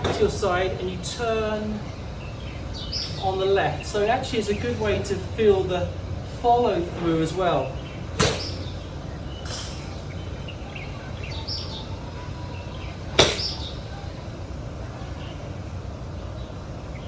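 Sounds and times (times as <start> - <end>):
birds chirping: 0.0 - 17.0
outdoor background noise: 0.0 - 17.0
golf club striking ball: 8.2 - 8.7, 13.1 - 13.7.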